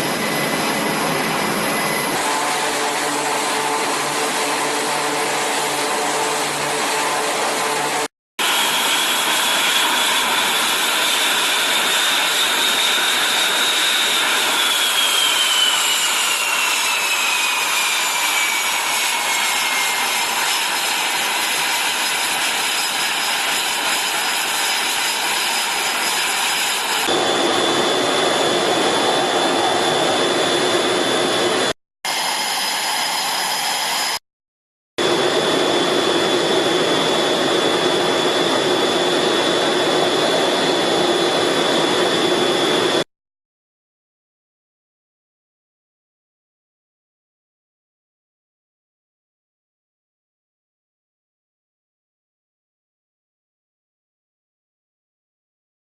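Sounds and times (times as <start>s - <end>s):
jet engines roaring with whine: 0.0s - 34.2s, 35.0s - 43.0s.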